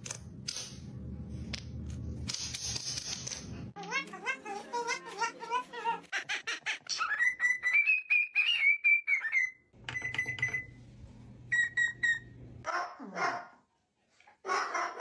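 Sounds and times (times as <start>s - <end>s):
parrot whistling: 7.0s - 9.7s.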